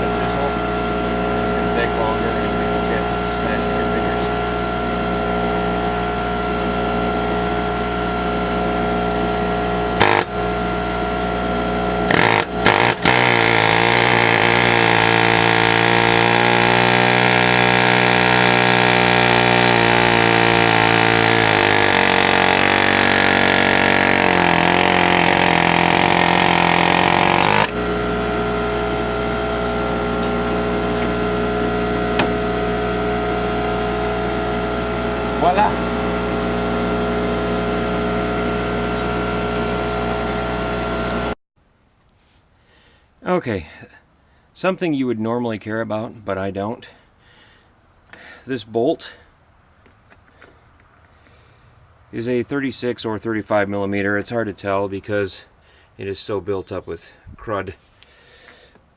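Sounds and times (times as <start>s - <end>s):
loud power tool: 0.0s - 41.4s
steady mechanical hum: 0.0s - 41.4s.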